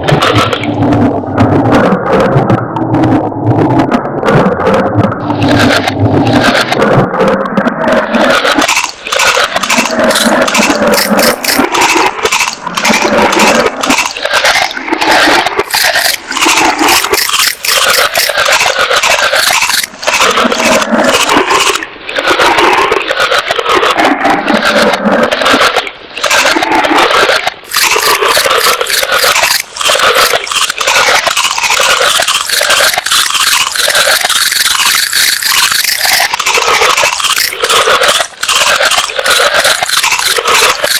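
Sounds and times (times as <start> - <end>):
animal chewing crunchy food: 8.2 - 21.8, 27.6 - 40.9.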